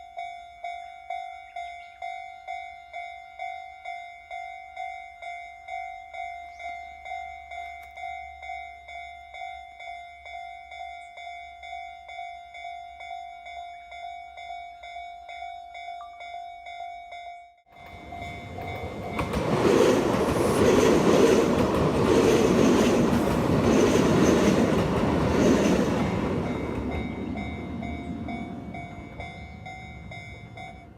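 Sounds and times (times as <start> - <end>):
level crossing warning chime: 0.0 - 19.5
train wheels clacking over rails: 17.9 - 30.7.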